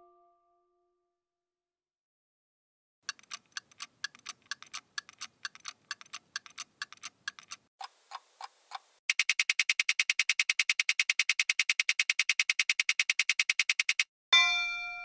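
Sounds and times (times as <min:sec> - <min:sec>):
loud fast ticking: 0:03.0 - 0:14.1
slower lower clock ticks: 0:03.1 - 0:14.0
clock ticking: 0:03.1 - 0:14.1.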